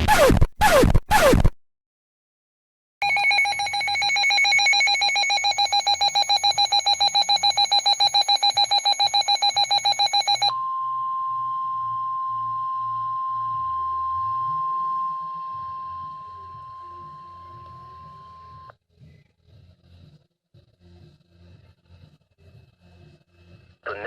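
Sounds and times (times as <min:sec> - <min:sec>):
rapidly pulsing electronic alarm: 0:00.0 - 0:01.6, 0:03.0 - 0:10.5
steady warning alarm tone: 0:03.0 - 0:10.5.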